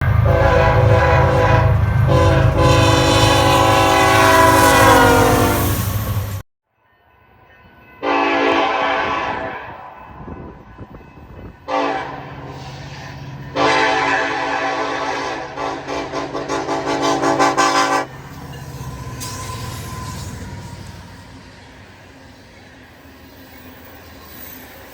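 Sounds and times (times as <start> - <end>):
train air horn blasts: 0.0 - 6.0, 8.0 - 10.6, 11.6 - 18.2
locomotive engine rumble: 0.0 - 6.4.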